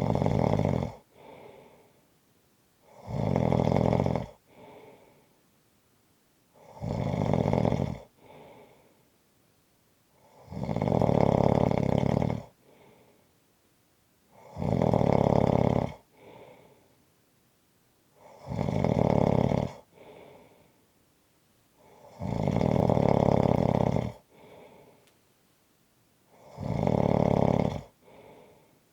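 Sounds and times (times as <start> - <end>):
person snoring: 0.0 - 1.9, 2.9 - 5.1, 6.6 - 8.8, 10.2 - 13.1, 14.3 - 16.8, 18.2 - 20.7, 21.8 - 25.0, 26.3 - 28.7
faint breath: 1.0 - 2.2, 4.4 - 5.5, 8.1 - 9.2, 12.6 - 13.4, 16.1 - 17.1, 19.9 - 21.0, 24.2 - 25.2, 27.9 - 28.9.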